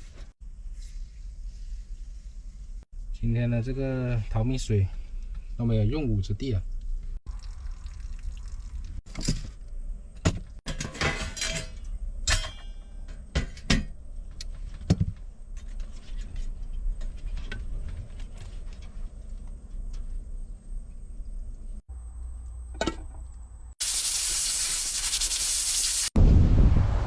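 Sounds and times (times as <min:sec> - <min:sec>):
utensils and containers clattering: 0:10.6 - 0:13.9.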